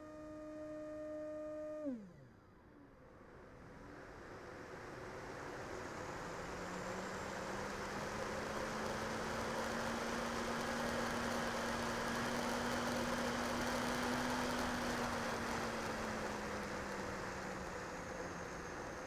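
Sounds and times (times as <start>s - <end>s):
electric motor and propeller hum: 0.0s - 2.3s.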